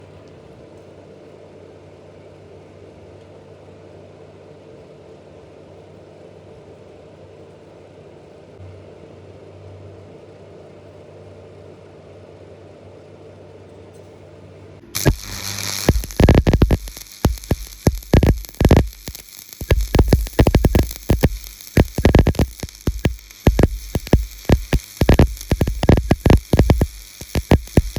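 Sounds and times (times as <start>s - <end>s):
low machine hum: 13.1s - 27.9s.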